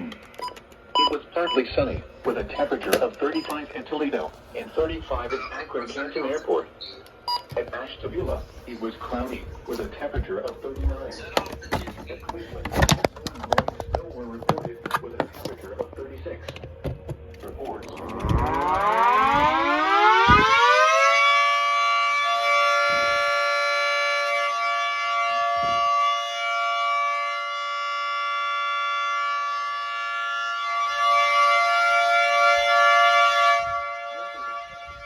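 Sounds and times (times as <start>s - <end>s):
tornado warning siren: 15.7s - 35.0s.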